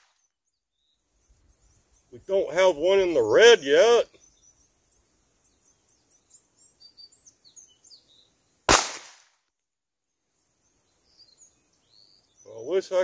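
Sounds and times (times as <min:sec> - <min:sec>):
birds chirping: 0:00.0 - 0:09.0, 0:10.0 - 0:13.0
pistol shot: 0:08.7 - 0:09.3.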